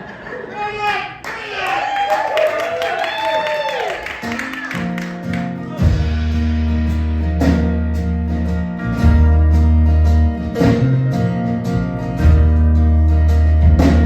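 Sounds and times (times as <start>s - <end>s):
strummed guitar chords: 4.3s - 14.0s
deep bass notes: 5.4s - 14.0s.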